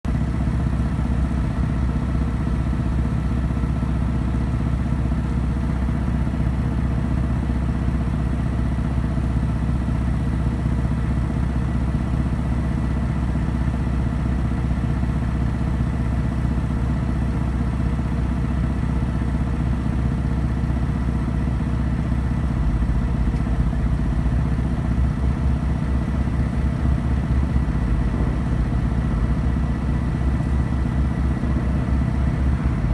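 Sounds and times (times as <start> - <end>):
motor idling: 13.5 - 32.9.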